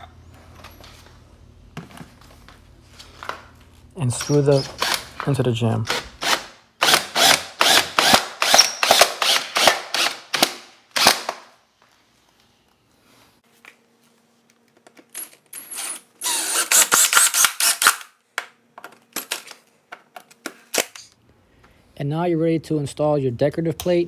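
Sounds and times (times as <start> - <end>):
power drill driving screws: 4.2 - 5.2, 5.9 - 10.2, 15.6 - 18.1.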